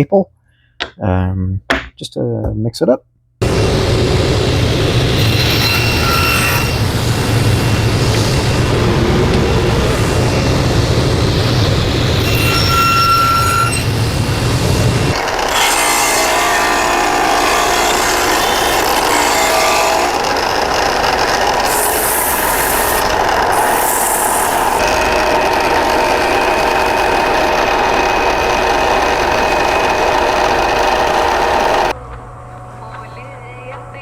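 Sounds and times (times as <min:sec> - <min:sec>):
power tool running under load: 0:13.7 - 0:32.0.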